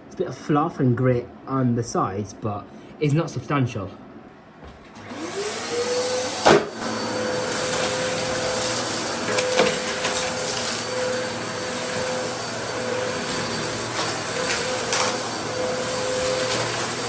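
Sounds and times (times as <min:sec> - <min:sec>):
vacuum cleaner motor running: 0:05.0 - 0:17.0.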